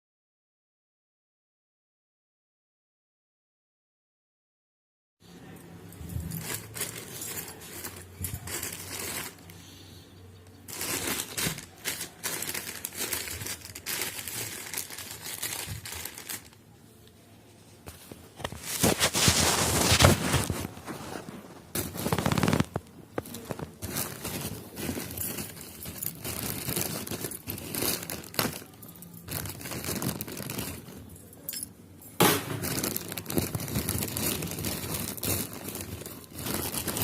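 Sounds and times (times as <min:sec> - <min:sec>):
plastic wrapping crinkling: 0:06.1 - 0:09.6, 0:10.6 - 0:16.6, 0:17.9 - 0:31.4, 0:32.2 - 0:37.0
packaging tearing: 0:10.7 - 0:16.6, 0:21.7 - 0:31.0, 0:32.6 - 0:37.0.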